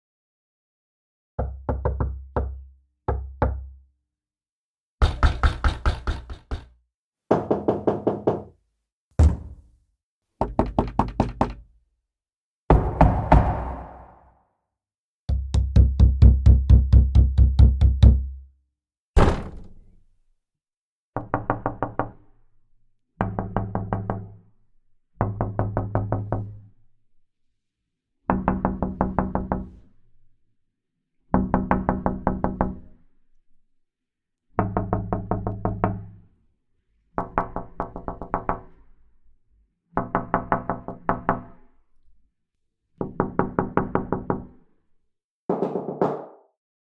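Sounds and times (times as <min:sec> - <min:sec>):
knocking on a door: 0:01.4 - 0:03.7, 0:05.0 - 0:08.6, 0:09.2 - 0:09.7, 0:10.4 - 0:11.7, 0:12.7 - 0:14.2, 0:15.3 - 0:18.4, 0:19.2 - 0:19.9, 0:45.5 - 0:46.4.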